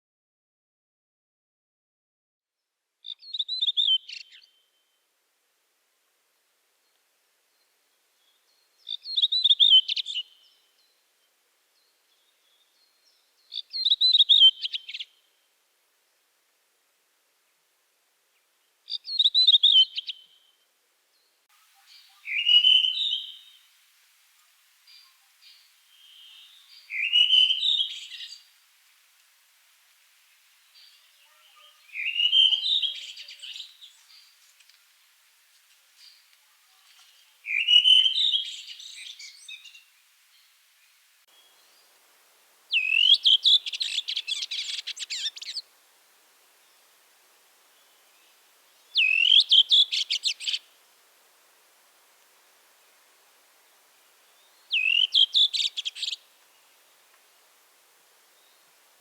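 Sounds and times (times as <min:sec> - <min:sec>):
bird song warbling and twittering: 0:03.0 - 0:04.6, 0:07.5 - 0:11.0, 0:11.8 - 0:15.2, 0:18.9 - 0:20.5, 0:21.2 - 0:23.6, 0:24.9 - 0:28.4, 0:30.7 - 0:34.4, 0:36.8 - 0:40.6, 0:42.7 - 0:45.7, 0:47.7 - 0:50.7, 0:54.3 - 0:56.3.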